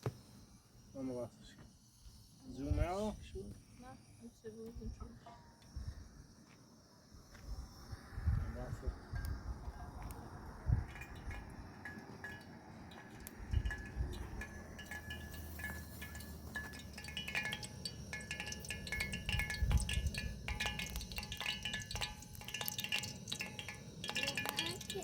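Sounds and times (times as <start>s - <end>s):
light tinkling chimes: 9.0s - 25.0s.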